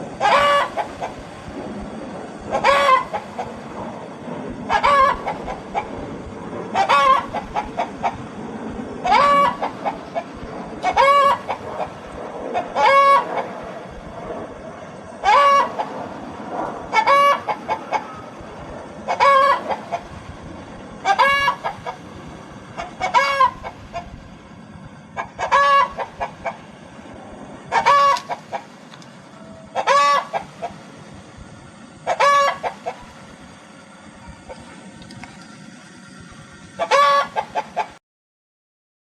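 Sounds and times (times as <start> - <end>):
hen clucking: 0.0 - 1.2, 2.4 - 3.6, 4.6 - 6.0, 6.7 - 8.3, 9.0 - 13.6, 15.2 - 16.0, 16.8 - 24.2, 25.1 - 26.7, 27.6 - 30.8, 32.0 - 33.3, 36.8 - 38.0.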